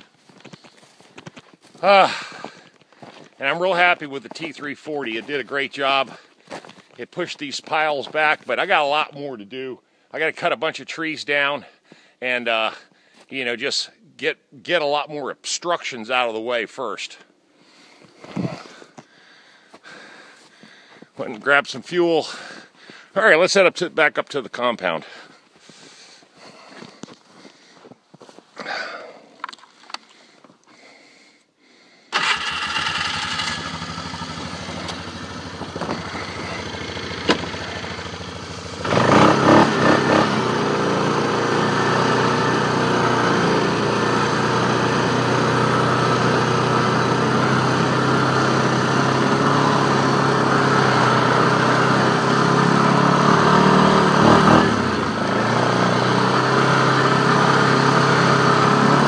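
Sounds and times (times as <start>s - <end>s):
atv engine starting and running: 1.7s - 2.8s, 3.4s - 6.6s, 32.1s - 59.0s.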